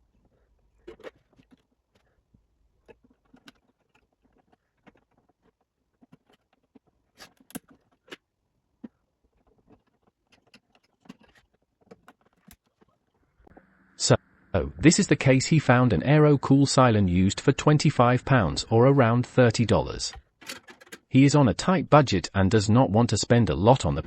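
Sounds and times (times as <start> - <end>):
computer hardware clicks and knocks: 20.1 - 21.1.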